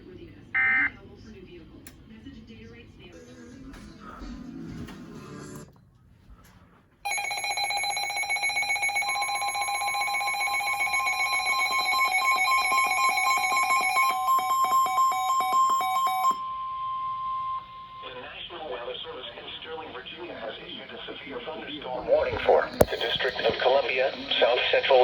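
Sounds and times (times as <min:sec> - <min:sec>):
electronic alarm beeping: 0:07.1 - 0:18.1
steady alarm tone: 0:07.1 - 0:18.3.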